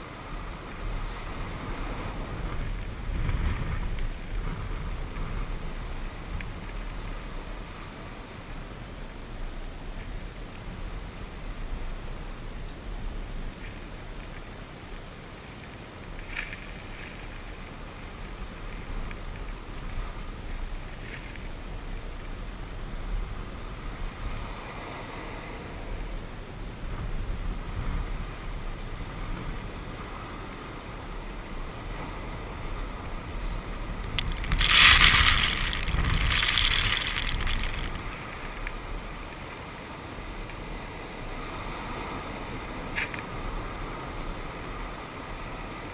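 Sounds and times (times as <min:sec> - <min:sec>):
wind on microphone: 0:00.0 - 0:14.3, 0:31.0 - 0:39.2
ocean surf: 0:00.0 - 0:45.9.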